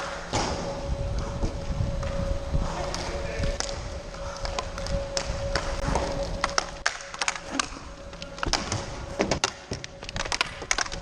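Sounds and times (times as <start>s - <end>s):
hockey sticks clacking: 4.4s - 11.0s.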